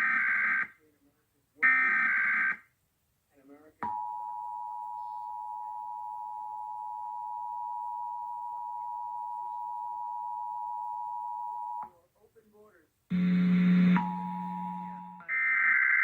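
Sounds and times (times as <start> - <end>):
two-tone attention signal: 13.1 - 15.3.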